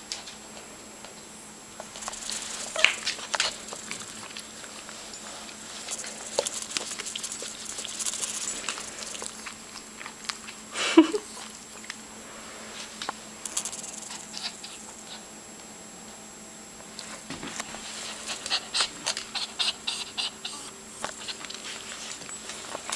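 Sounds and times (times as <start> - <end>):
dog claws clicking on floor: 1.8 - 10.6, 13.0 - 14.8
dog whining: 2.2 - 4.3, 18.4 - 21.7.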